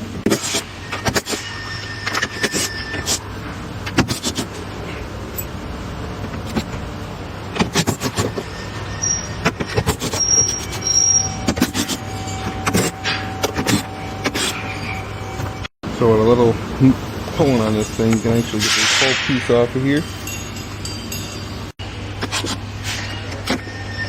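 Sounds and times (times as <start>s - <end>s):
short high squeaks: 0.8s - 3.3s, 8.1s - 15.7s, 22.4s - 24.0s.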